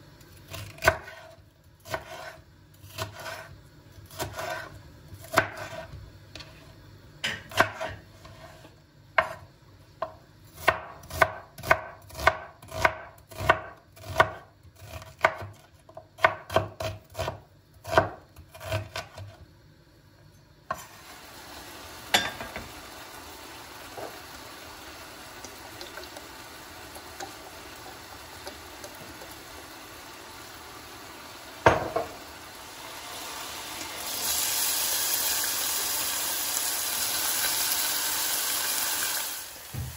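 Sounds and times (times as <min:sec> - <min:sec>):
knife chopping on cutting board: 0:00.5 - 0:03.5, 0:04.1 - 0:06.0, 0:07.2 - 0:08.6, 0:09.2 - 0:09.4, 0:10.0 - 0:19.4.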